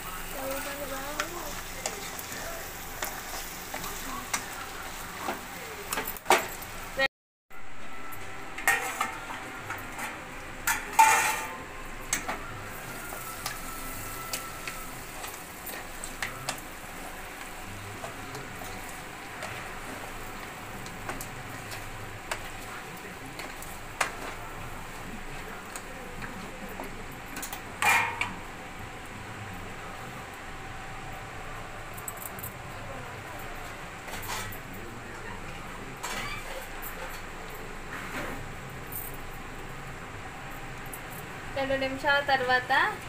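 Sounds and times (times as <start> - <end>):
meat sizzling in oil: 0.0 - 6.0
metal spatula scraping pan: 8.6 - 9.4.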